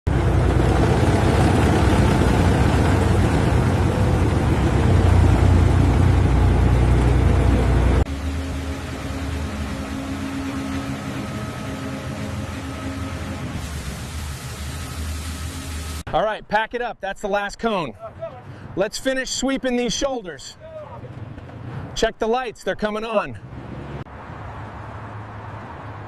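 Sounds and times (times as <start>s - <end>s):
heavy engine running loud: 0.0s - 16.0s
quiet engine hum: 0.1s - 16.0s.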